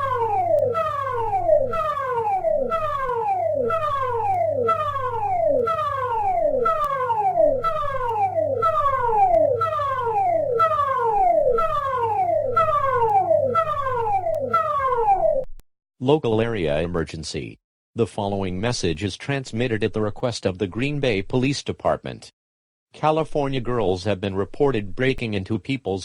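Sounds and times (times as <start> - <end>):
electronic siren falling sweep: 0.0 - 15.5.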